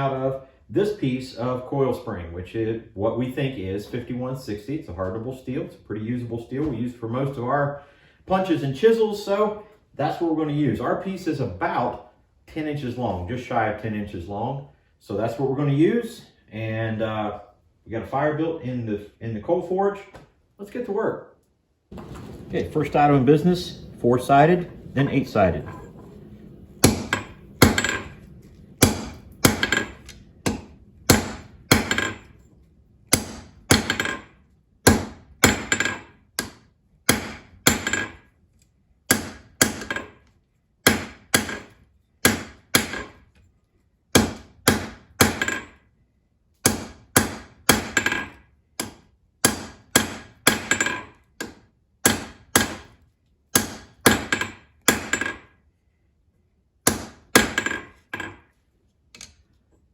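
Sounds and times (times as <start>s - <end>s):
hammer striking steel on anvil: 25.4s - 26.1s, 26.8s - 32.4s, 33.1s - 34.3s, 34.9s - 38.2s, 40.9s - 41.7s, 46.6s - 52.9s, 53.6s - 55.4s, 56.9s - 58.4s.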